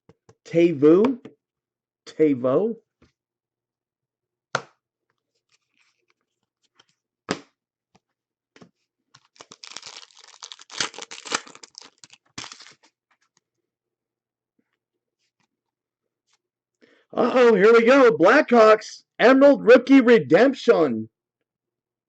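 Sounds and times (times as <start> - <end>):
card pack wrapper tearing: 9.2 - 12.9.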